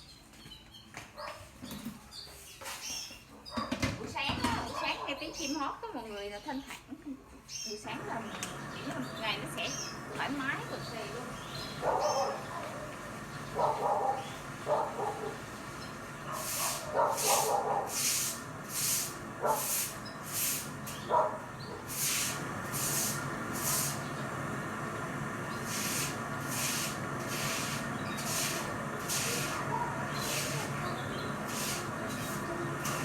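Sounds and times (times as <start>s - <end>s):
dog barking: 1.2s - 1.4s, 3.4s - 3.8s, 4.6s - 5.4s, 11.8s - 15.4s, 16.2s - 18.0s, 19.4s - 19.8s, 21.0s - 21.9s, 29.5s - 30.7s
brush scrubbing: 16.2s - 24.0s, 25.6s - 33.0s.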